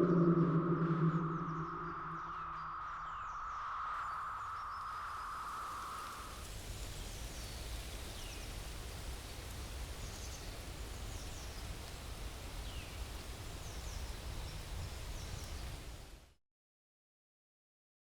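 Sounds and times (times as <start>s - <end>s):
low rumble: 0.0s - 5.9s
steady hiss: 3.8s - 16.4s
small birds chirping: 4.0s - 15.9s.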